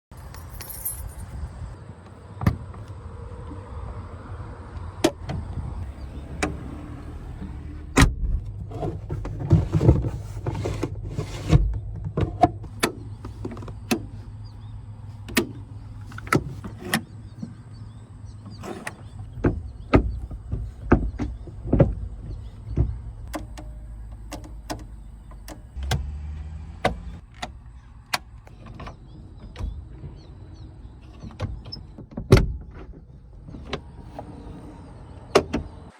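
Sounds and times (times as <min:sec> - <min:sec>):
sharp irregular clicks and knocks: 0:18.4 - 0:26.0.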